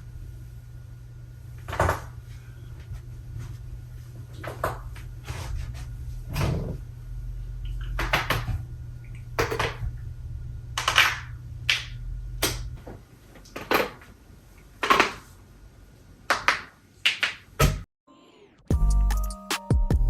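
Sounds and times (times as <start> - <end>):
low hum: 0.0 - 13.3.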